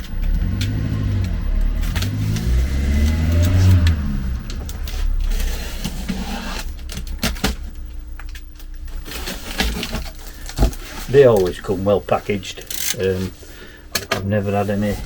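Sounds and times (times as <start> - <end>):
cardboard box sliding scrape: 1.9 - 6.9, 14.5 - 15.0
knocks and rustles of packaging: 4.6 - 11.6.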